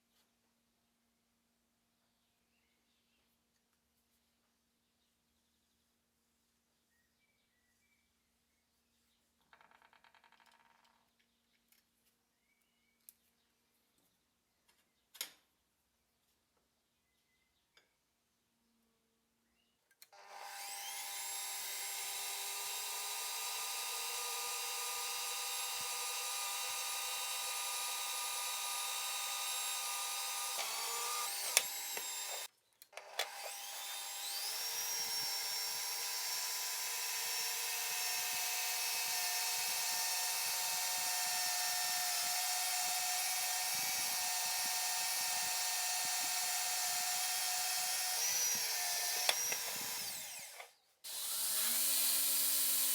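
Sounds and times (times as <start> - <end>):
power tool motor running: 20.2 - 52.9.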